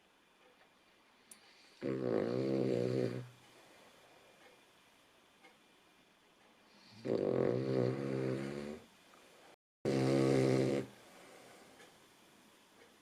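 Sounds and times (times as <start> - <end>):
dog snoring: 1.5 - 3.4, 6.7 - 8.9, 9.9 - 11.4.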